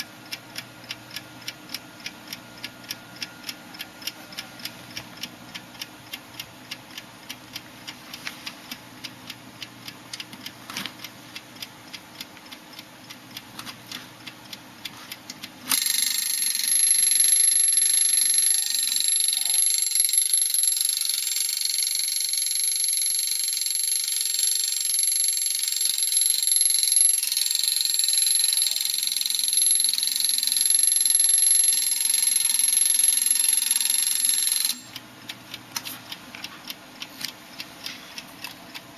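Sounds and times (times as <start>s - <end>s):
mechanical clock ticking: 0.0s - 38.9s
alarm clock ringing: 15.7s - 35.0s.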